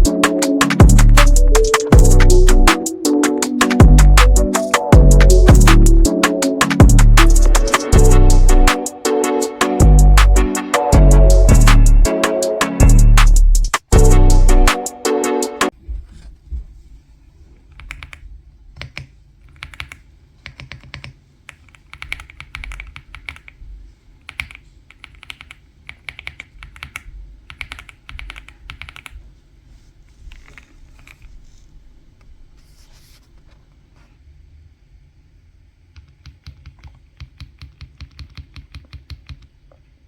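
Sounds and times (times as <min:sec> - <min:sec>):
mechanical keyboard typing: 0:17.7 - 0:18.2, 0:18.8 - 0:23.6, 0:24.2 - 0:29.2, 0:36.0 - 0:39.5.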